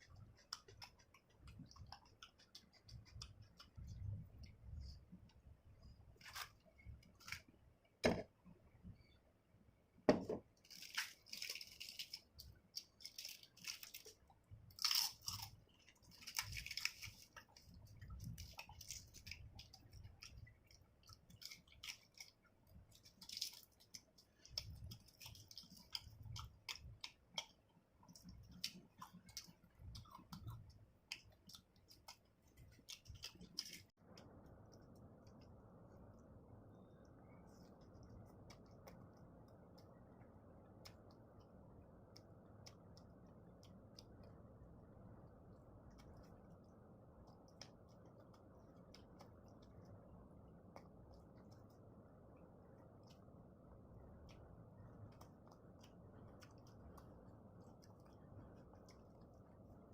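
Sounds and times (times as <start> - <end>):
crunching bites and chewing: 10.6 - 20.3.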